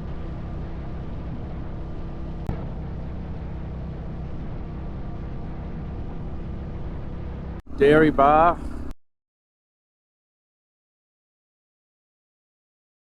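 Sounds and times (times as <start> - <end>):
motorcycle engine cruising: 0.0 - 9.0
road and wind noise: 0.0 - 9.0.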